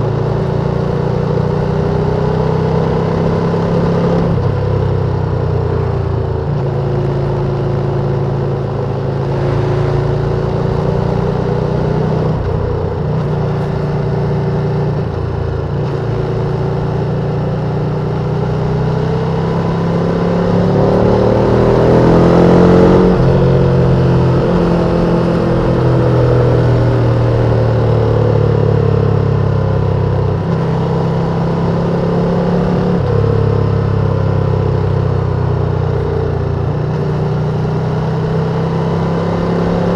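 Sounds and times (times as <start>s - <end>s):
motorcycle engine revving: 0.0s - 39.9s
wind and road rush: 0.0s - 39.9s.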